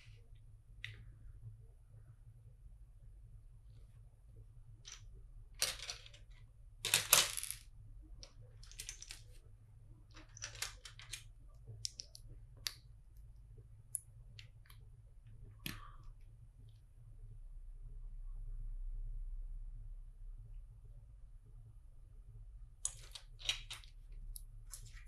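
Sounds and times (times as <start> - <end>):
plastic bricks clicking: 10.2 - 12.8, 22.8 - 25.0.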